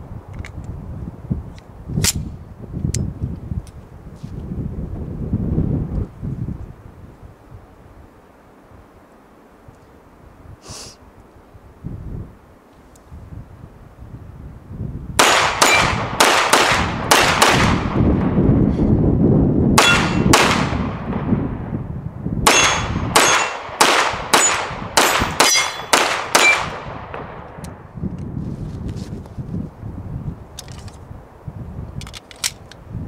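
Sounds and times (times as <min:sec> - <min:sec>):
pistol shots with metallic ring: 0:15.2 - 0:17.7, 0:19.8 - 0:20.8, 0:22.5 - 0:26.8.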